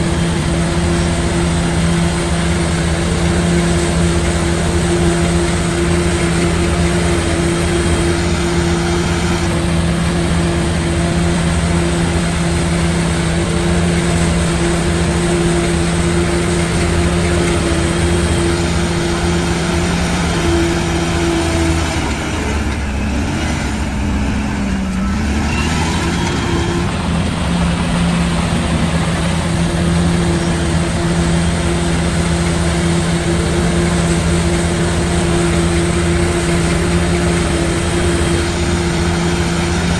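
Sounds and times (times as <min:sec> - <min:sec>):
diesel machinery engine running: 0:00.0 - 0:39.9.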